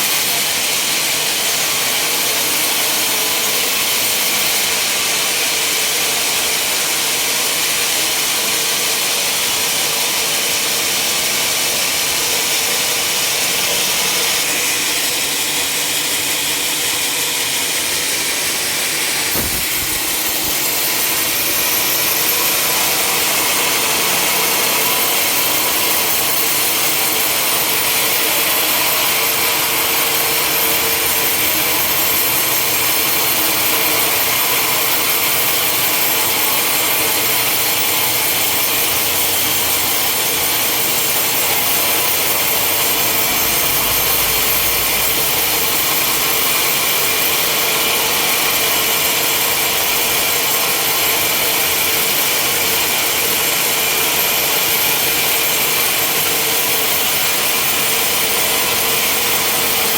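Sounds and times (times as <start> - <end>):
saw blade cutting through log: 9.8 - 59.9
sharp click: 19.3 - 20.6.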